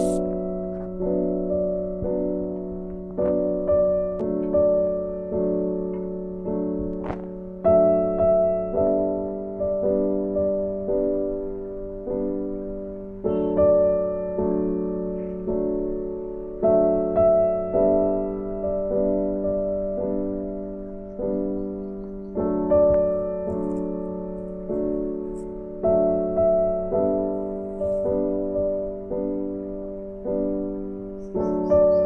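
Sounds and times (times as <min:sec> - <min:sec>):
gentle piano chords: 0:00.0 - 0:32.0.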